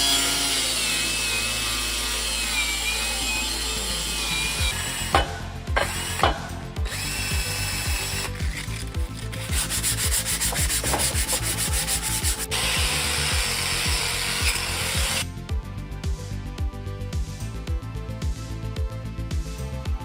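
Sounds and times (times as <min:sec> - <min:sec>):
background music beat: 0:00.0 - 0:20.0
sanding and rubbing: 0:07.4 - 0:12.9.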